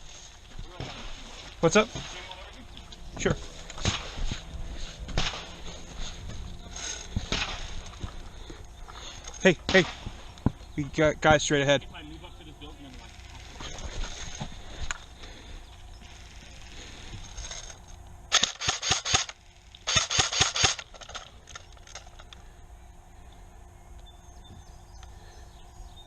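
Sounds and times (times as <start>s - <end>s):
airsoft gun firing bursts: 18.3s - 21.0s.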